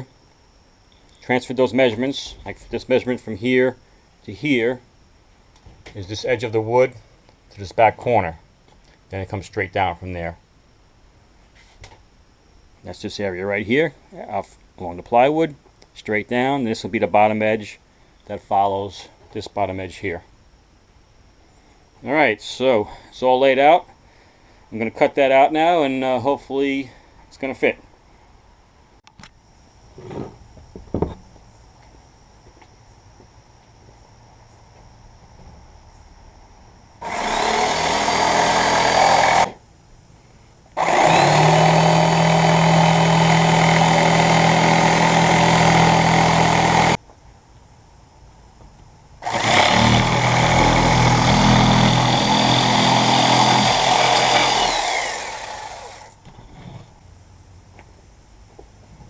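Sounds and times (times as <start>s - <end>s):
electric power saw cutting board: 37.0s - 39.6s, 40.8s - 47.0s, 49.2s - 56.2s.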